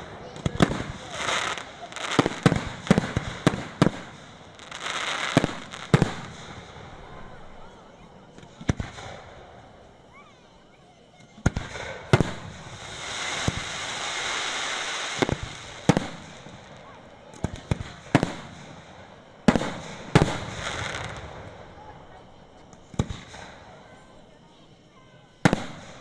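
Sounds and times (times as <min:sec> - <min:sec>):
long hiss: 0:00.0 - 0:26.0
fireworks shells bursting: 0:11.4 - 0:23.8.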